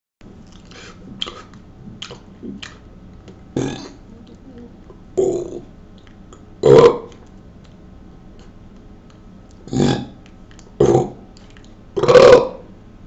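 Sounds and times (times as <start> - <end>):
person burping: 3.6 - 4.1, 5.2 - 5.7, 6.6 - 7.1, 9.7 - 10.2, 10.8 - 11.2, 12.0 - 12.6.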